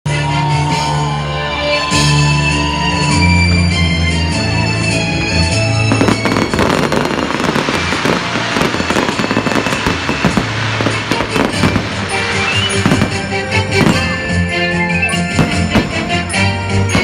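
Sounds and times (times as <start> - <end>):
music: 0.0 - 17.0
fireworks bangs and crackles: 5.3 - 17.0.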